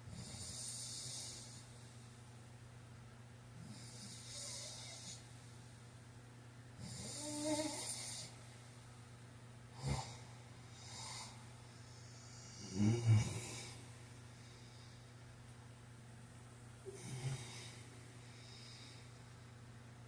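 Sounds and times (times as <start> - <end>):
man snoring: 0.1 - 1.6, 3.6 - 5.2, 6.8 - 8.3, 9.8 - 11.4, 12.3 - 13.8, 16.9 - 17.8.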